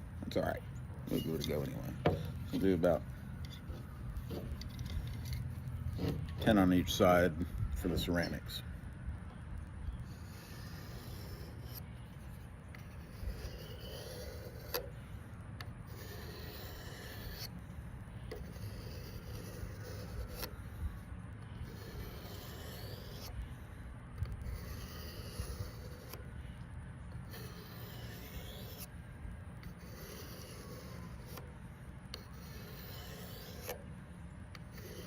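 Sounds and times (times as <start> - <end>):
knife scraping on sharpening rods: 1.0 - 8.6, 10.1 - 15.0, 15.8 - 17.6, 18.3 - 20.8, 21.5 - 23.4, 24.2 - 26.3, 27.1 - 28.9, 29.6 - 31.5, 32.1 - 33.9, 34.5 - 35.0.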